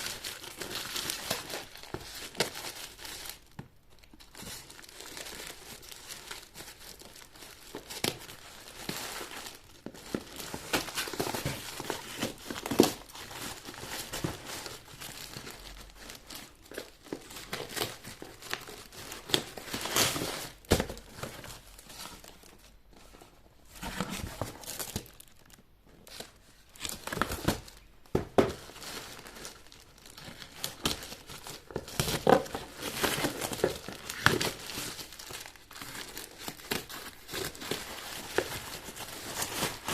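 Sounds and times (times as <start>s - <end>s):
packaging crinkling and tearing: 0.0s - 22.6s, 23.8s - 39.9s.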